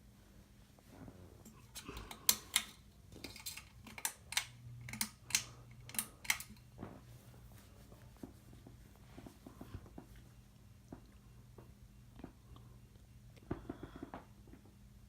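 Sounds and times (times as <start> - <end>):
ceiling fan humming: 0.0 - 15.0.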